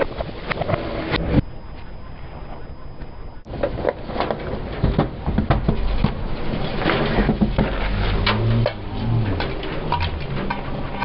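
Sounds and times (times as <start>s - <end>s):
objects crunching under car tyre: 3.5s - 11.0s.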